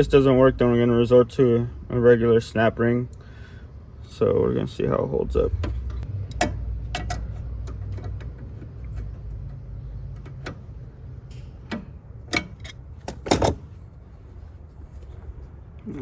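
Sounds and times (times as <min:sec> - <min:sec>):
low hum: 0:05.0 - 0:12.8.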